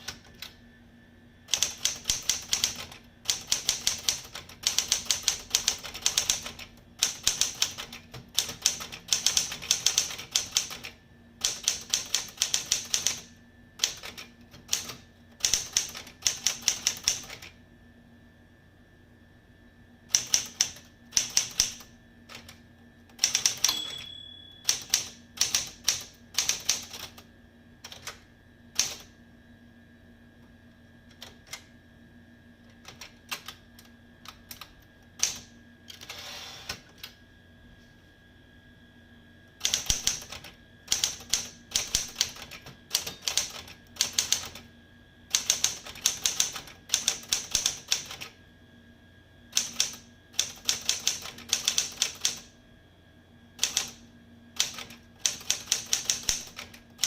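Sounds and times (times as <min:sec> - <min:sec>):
manual typewriter typing: 0:01.5 - 0:17.5, 0:20.1 - 0:27.2, 0:27.9 - 0:28.2, 0:28.8 - 0:29.1, 0:39.6 - 0:44.6, 0:45.3 - 0:48.3, 0:49.6 - 0:52.5, 0:53.6 - 0:54.0, 0:54.6 - 0:57.0
typewriter bell ring: 0:23.6 - 0:25.1.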